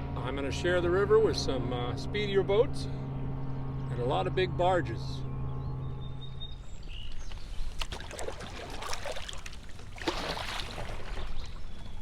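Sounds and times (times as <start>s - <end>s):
steady low rumble: 0.0s - 7.7s
paddle splashing in water: 7.1s - 12.0s.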